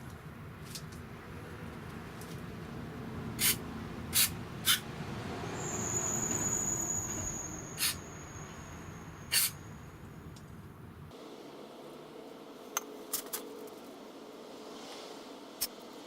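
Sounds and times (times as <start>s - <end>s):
thin high steady tone: 5.5s - 10.0s.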